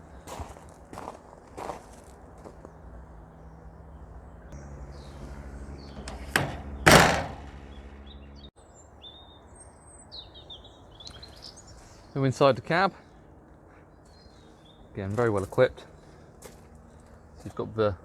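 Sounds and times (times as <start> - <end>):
low steady hum: 0.0 - 8.6
birds chirping: 0.0 - 18.0
truck bodywork clunk: 5.0 - 7.7
loud slam: 6.3 - 7.6.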